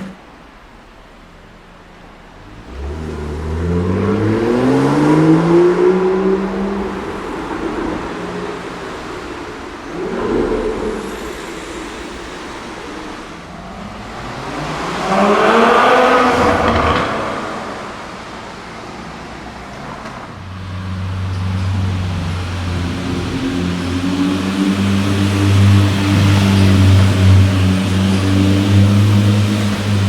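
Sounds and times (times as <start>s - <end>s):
car engine accelerating in tunnel: 0.0s - 30.0s
rising engine note: 2.5s - 18.8s.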